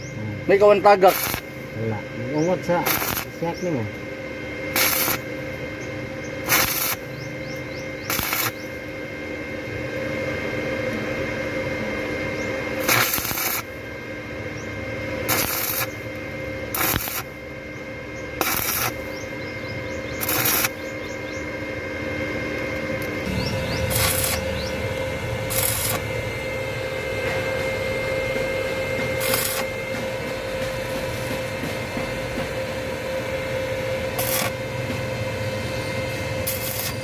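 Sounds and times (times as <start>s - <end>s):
steady hum: 0.0s - 37.0s
harsh shop tool bursts: 0.8s - 1.6s, 2.7s - 3.8s, 4.7s - 5.4s, 6.4s - 7.1s, 8.1s - 8.8s, 12.7s - 13.8s, 15.2s - 16.0s, 16.7s - 17.3s, 18.4s - 19.1s, 20.2s - 20.9s, 23.2s - 31.5s, 33.9s - 34.8s, 36.4s - 37.0s.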